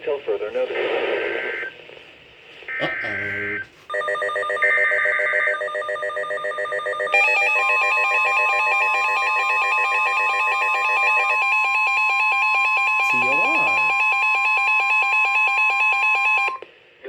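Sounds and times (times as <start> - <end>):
steady warning alarm tone: 3.0 - 16.6.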